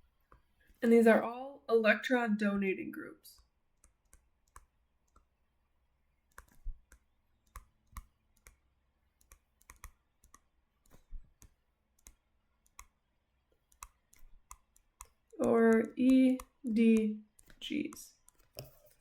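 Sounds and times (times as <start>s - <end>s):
stylus tapping on tablet screen: 3.8s - 5.3s, 6.3s - 8.6s, 9.2s - 13.0s, 13.6s - 19.0s.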